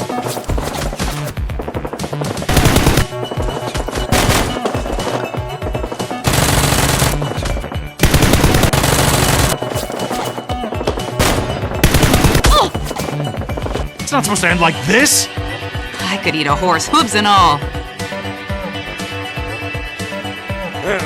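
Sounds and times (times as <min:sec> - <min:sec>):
action background music: 0:00.0 - 0:21.0
automatic gunfire: 0:02.5 - 0:03.2, 0:04.1 - 0:05.2, 0:06.2 - 0:07.3, 0:08.0 - 0:09.6, 0:11.2 - 0:12.6.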